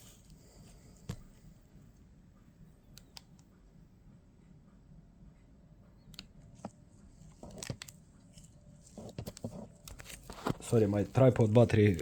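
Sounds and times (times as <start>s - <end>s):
soft handling noises: 0.0s - 3.7s, 6.1s - 12.0s.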